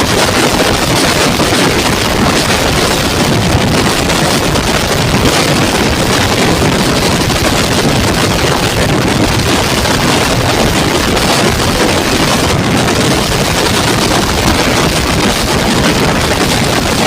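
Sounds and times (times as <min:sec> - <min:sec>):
motorcycle engine running: 0:00.0 - 0:17.0
wind noise on microphone: 0:00.0 - 0:17.0.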